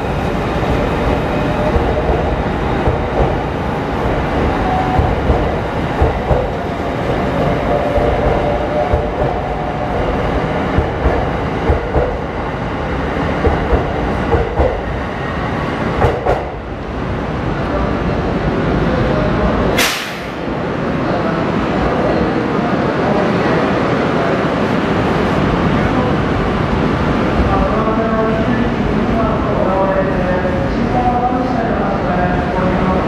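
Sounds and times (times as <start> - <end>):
train rumbling: 0.0 - 33.0
sharp hiss: 19.8 - 20.4.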